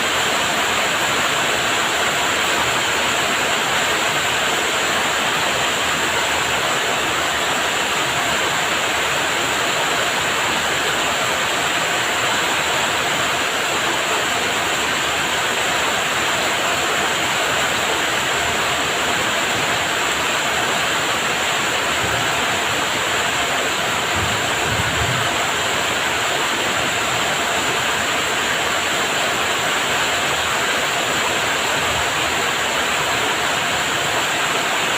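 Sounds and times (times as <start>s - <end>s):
heavy rain falling: 0.0s - 34.9s.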